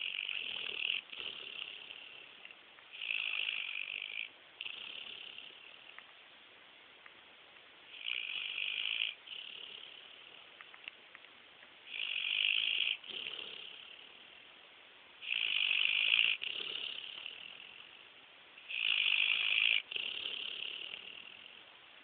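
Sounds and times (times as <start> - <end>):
dog snoring: 0.0 - 6.0, 7.9 - 10.6, 11.9 - 14.4, 15.2 - 21.6.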